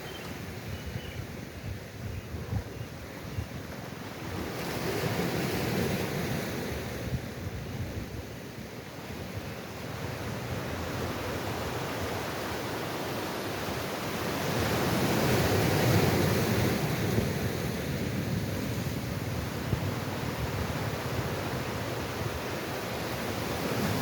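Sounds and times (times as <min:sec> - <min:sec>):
sea waves washing onto shore: 0:08.1 - 0:24.0.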